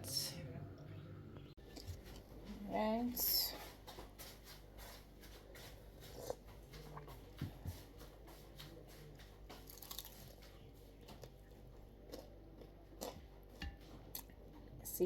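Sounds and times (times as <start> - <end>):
person biting and chewing: 9.6 - 10.4, 12.1 - 13.3.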